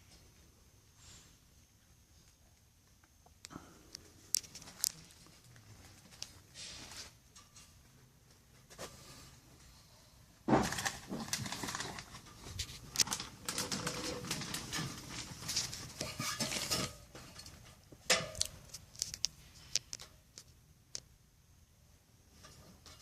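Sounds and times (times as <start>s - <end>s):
objects scraping and clattering: 10.4s - 20.1s, 22.3s - 23.0s.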